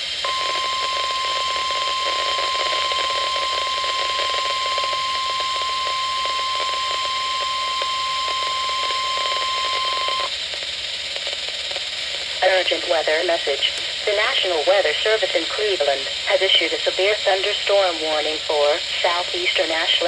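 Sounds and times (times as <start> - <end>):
constant hiss: 0.0 - 20.0
high warning alarm tone: 0.2 - 10.3.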